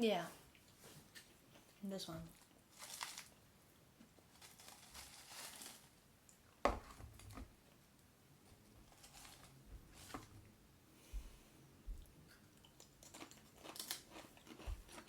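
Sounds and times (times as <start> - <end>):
chip can rustling and crinkling: 2.3 - 3.4, 4.2 - 6.1, 8.8 - 10.3.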